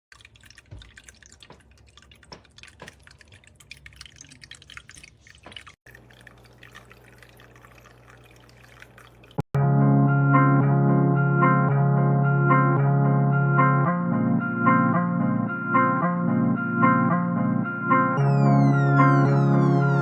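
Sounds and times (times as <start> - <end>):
water trickling and dripping: 0.1 - 9.4.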